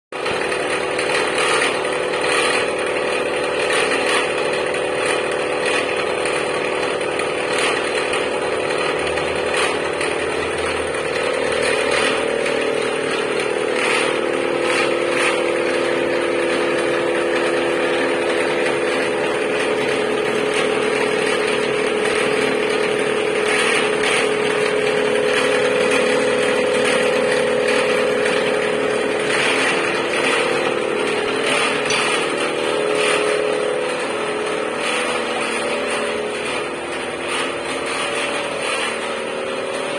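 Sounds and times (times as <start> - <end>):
metalworking machine humming: 0.1 - 39.9.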